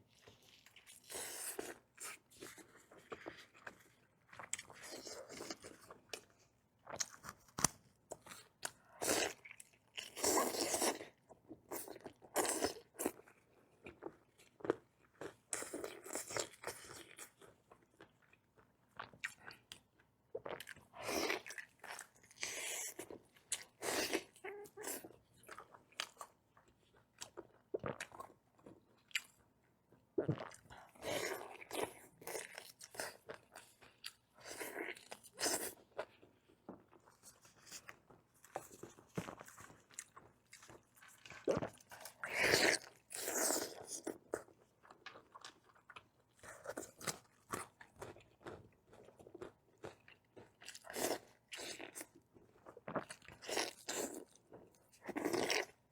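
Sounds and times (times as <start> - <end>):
person chewing crunchy food: 0.1 - 55.9.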